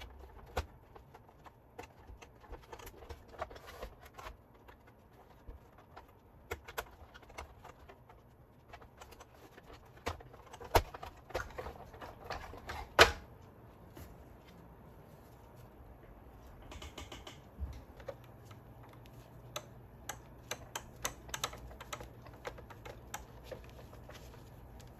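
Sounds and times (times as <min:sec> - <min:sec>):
small parts and tools clicking: 0:16.6 - 0:24.9.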